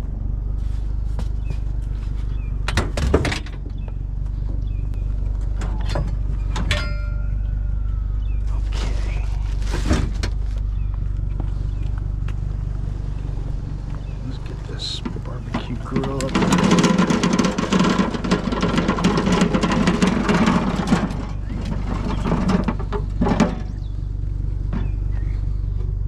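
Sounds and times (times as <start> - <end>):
vehicle engine idling: 0.0 - 26.0
metal clattering: 5.4 - 7.7, 14.3 - 23.9
scrap metal clanking: 5.4 - 10.8, 14.0 - 23.9
metallic ring: 6.6 - 7.7.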